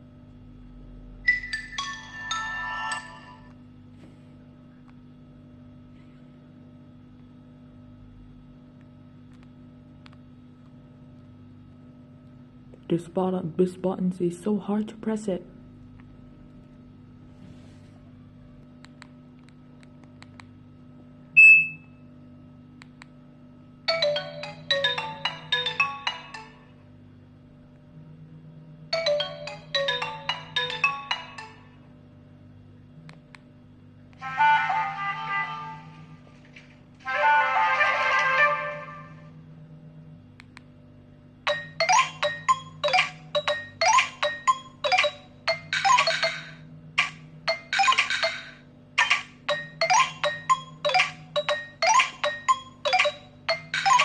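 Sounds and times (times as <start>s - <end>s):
marimba-like ringtone: 1.3s - 3.5s, 23.9s - 26.8s, 29.0s - 31.8s, 41.5s - 54.0s.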